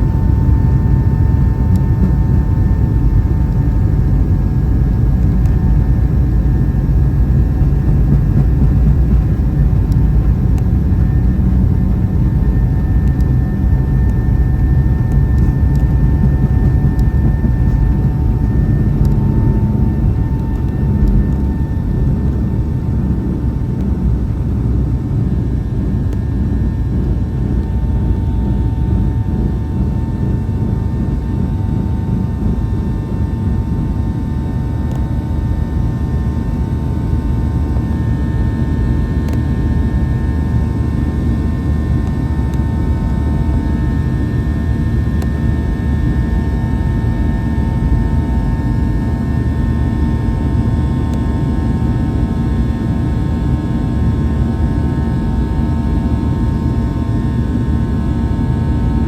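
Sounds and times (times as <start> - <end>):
engine fan whine: 0.0 - 59.0
jet engine cabin roar: 0.0 - 59.0.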